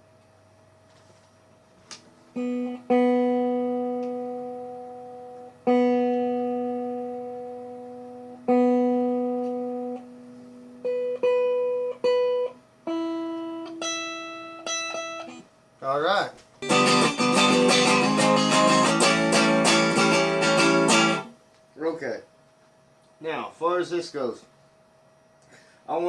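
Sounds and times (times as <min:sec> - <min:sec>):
electric guitar single notes: 0:02.3 - 0:15.5, 0:16.6 - 0:21.4.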